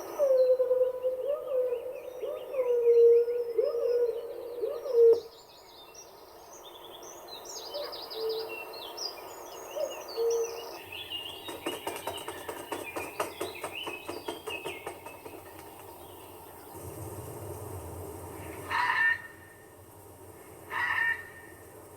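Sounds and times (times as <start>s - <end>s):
birds chirping and whistling: 0.2s - 16.8s
rapid rattling clicks: 11.3s - 16.2s.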